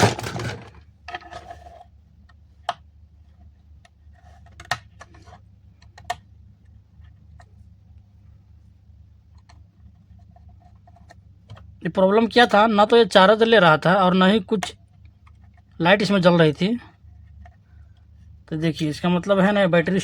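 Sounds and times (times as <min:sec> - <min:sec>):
faint low hum: 0:00.0 - 0:20.0
small hard clicks and taps: 0:03.8 - 0:07.6.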